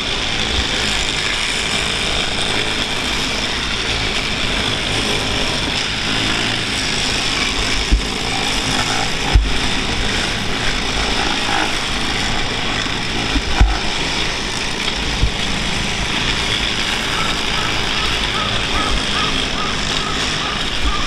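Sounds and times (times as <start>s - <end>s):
track machinery running: 0.0s - 21.0s
low thumps: 9.1s - 10.1s, 13.3s - 14.0s.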